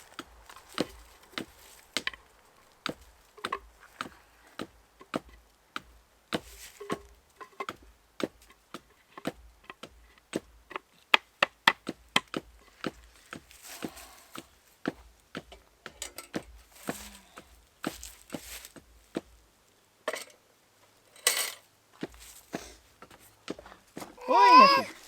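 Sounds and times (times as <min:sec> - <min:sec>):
blade chopping wood: 0:00.0 - 0:10.5, 0:11.1 - 0:19.3.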